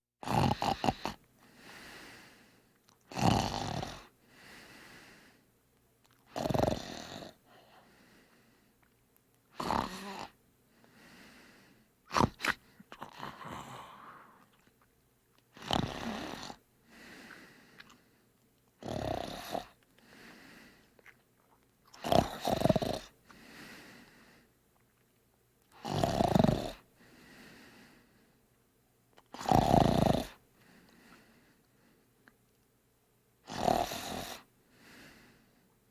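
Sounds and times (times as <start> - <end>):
person snoring: 0.2 - 2.3, 3.1 - 4.1, 6.3 - 7.4, 9.6 - 10.4, 12.1 - 14.5, 15.6 - 16.6, 18.8 - 19.8, 22.0 - 23.8, 25.8 - 26.8, 29.4 - 30.4, 33.5 - 35.3
soft breath out: 1.0 - 2.8, 4.2 - 5.5, 7.4 - 8.8, 10.0 - 11.9, 12.6 - 14.5, 16.8 - 18.3, 19.6 - 21.0, 23.2 - 24.6, 27.0 - 28.4, 30.6 - 32.1, 34.7 - 35.7.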